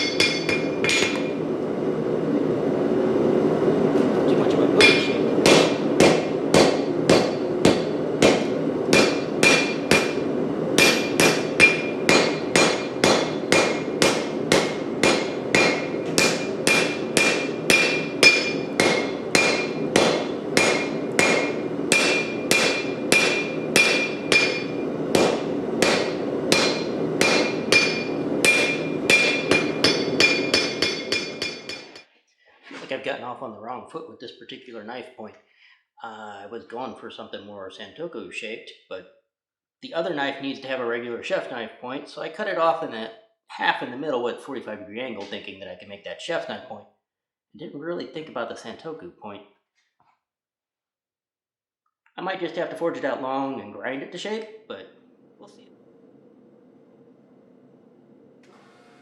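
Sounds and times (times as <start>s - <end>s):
hammer blows on steel anvil: 0.0s - 1.4s, 4.8s - 10.2s, 10.8s - 32.0s
gas forge running: 0.0s - 32.0s, 55.1s - 59.0s.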